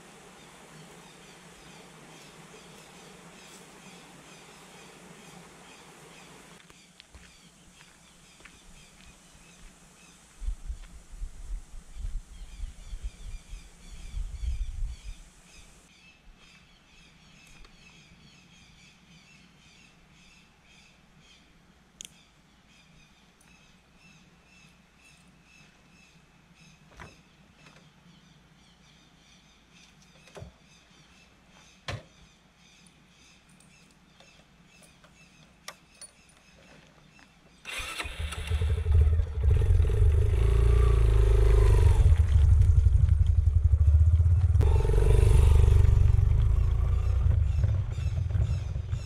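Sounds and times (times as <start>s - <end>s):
loud low engine running: 38.5s - 49.0s.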